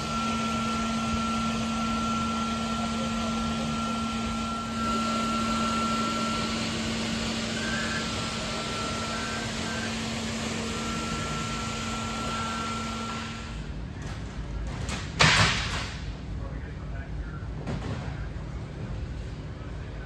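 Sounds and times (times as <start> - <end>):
floor scrubber motor running: 0.0 - 13.6
high-pitched whine: 0.0 - 13.6.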